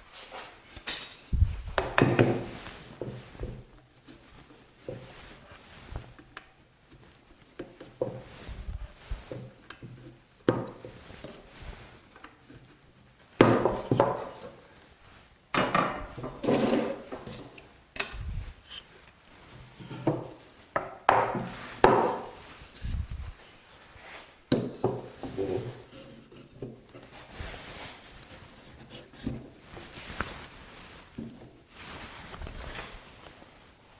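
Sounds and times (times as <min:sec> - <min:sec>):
wood knocking on wood: 0:20.0 - 0:22.4.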